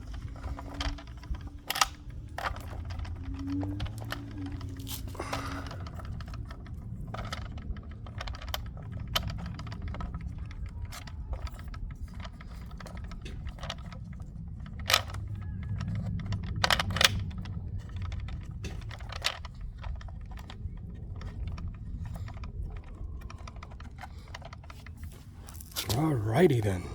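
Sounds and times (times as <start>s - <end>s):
steady low hum: 17.2s - 26.9s
hand tools clicking and clinking: 22.2s - 26.9s.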